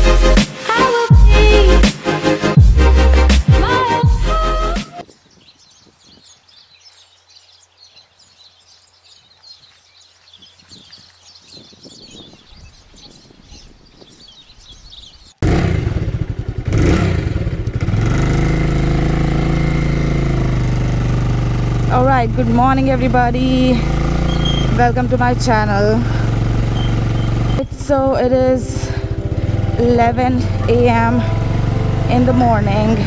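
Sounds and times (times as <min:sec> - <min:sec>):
faint birds chirping: 0:05.0 - 0:15.4, 0:21.8 - 0:31.3
vehicle engine running loudly: 0:15.4 - 0:33.0.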